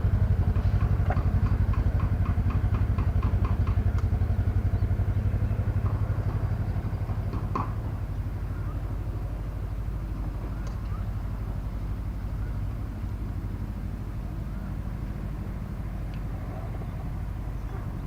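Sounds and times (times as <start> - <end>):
small engine idling: 0.0 - 18.0.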